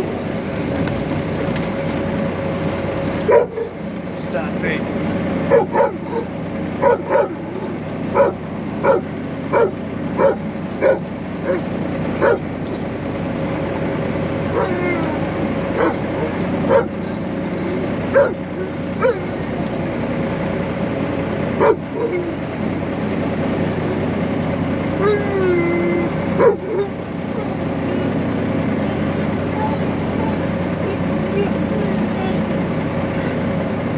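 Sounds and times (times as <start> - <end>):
truck engine drone: 0.0 - 33.9
dog barking in yelps: 3.3 - 3.8, 5.5 - 12.5, 14.5 - 15.1, 15.8 - 17.0, 18.1 - 19.4, 21.6 - 22.4, 25.0 - 25.8, 26.4 - 27.5
dog whining: 5.5 - 12.5, 14.5 - 16.9, 17.7 - 19.8, 21.6 - 22.5, 25.0 - 27.6.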